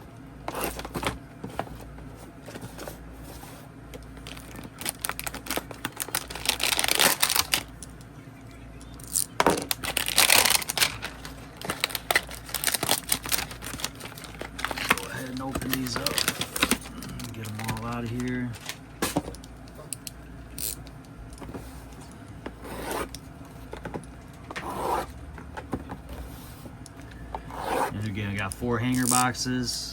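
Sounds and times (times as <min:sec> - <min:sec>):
packs crinkling: 0:04.1 - 0:07.8, 0:09.0 - 0:19.8, 0:28.0 - 0:29.4
cardboard boxes tearing: 0:04.2 - 0:07.7, 0:09.6 - 0:19.2.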